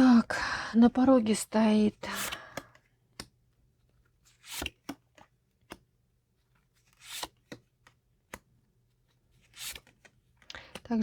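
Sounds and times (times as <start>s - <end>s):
cards brushing sliding: 4.2s - 5.8s, 6.8s - 7.6s, 9.4s - 10.8s
cards clicking on table: 4.4s - 5.8s.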